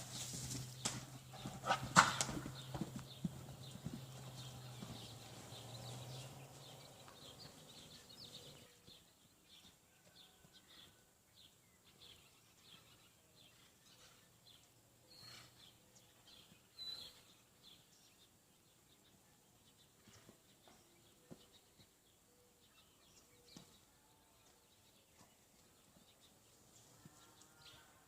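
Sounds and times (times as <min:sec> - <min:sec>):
small birds chirping: 0:00.0 - 0:28.0.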